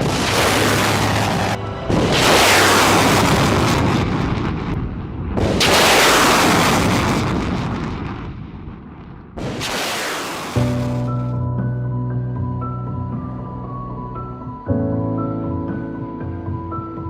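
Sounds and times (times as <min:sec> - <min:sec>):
rocket launches roaring: 0:00.0 - 0:11.2.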